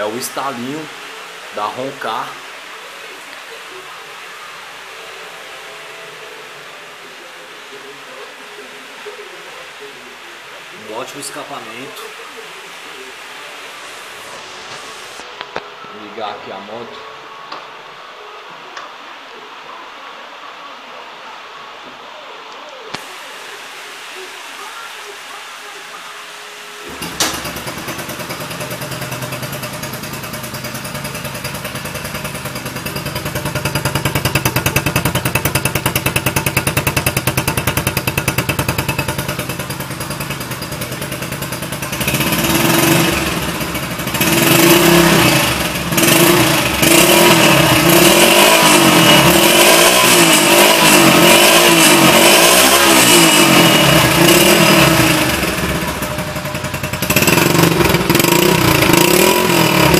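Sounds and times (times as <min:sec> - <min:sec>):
motorcycle engine revving: 0:26.8 - 0:59.9
motorcycle engine starting and idling: 0:26.8 - 0:59.9.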